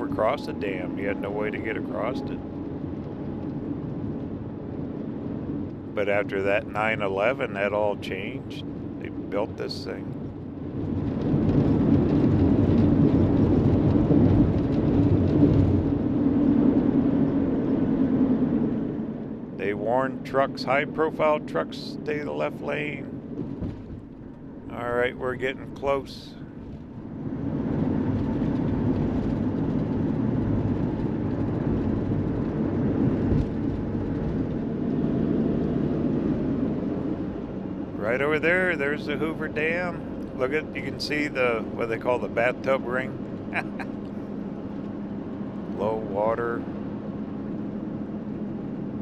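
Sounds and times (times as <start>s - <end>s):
vehicle road and wind noise: 0.0s - 49.0s
low thump: 23.4s - 24.1s.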